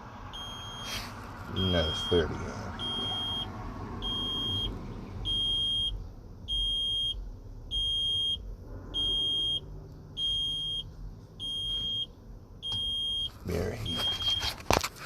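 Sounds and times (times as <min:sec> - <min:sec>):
electronic warning buzzer beeping: 0:00.4 - 0:00.9, 0:01.6 - 0:04.7, 0:05.3 - 0:08.4, 0:09.0 - 0:09.6, 0:10.2 - 0:10.8, 0:11.4 - 0:13.3.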